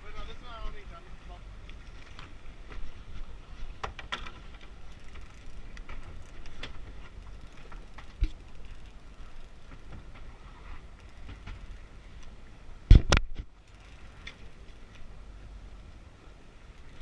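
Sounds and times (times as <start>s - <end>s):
boat engine rumble: 0.0s - 17.0s
fishing gear clicks and knocks: 1.6s - 10.3s, 10.9s - 12.3s.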